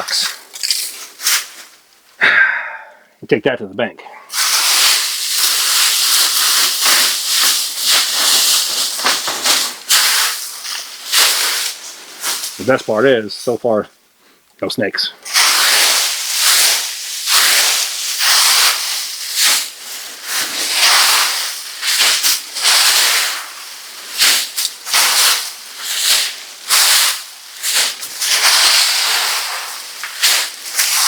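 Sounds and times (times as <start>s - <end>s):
dry leaves rustling and crunching: 4.3s - 12.6s, 15.3s - 31.0s.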